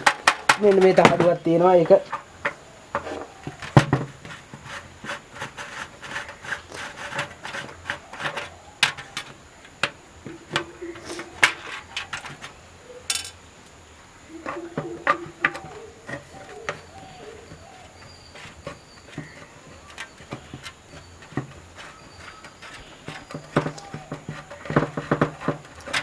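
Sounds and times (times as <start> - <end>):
metal parts clicking and scraping: 10.5 - 13.5.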